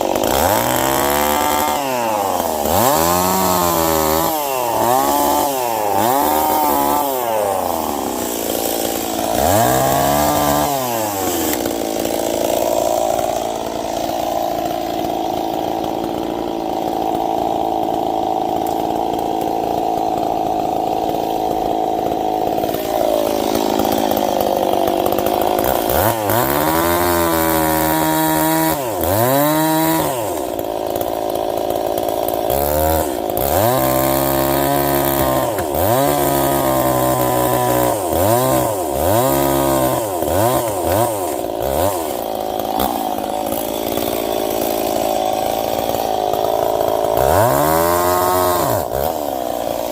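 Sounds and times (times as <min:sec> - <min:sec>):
chainsaw revving: 0:00.0 - 0:49.9.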